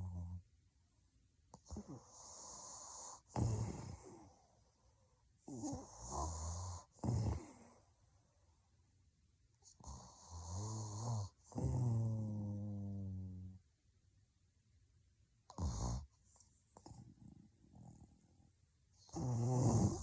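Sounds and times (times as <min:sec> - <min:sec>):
woman snoring heavily: 0:01.7 - 0:04.1, 0:19.1 - 0:20.0.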